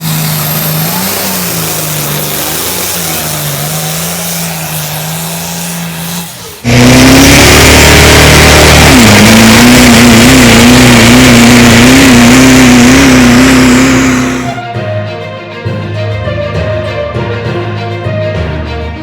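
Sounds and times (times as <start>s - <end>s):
loud high-pitched engine: 0.0s - 14.7s
truck engine running hard: 0.0s - 14.7s.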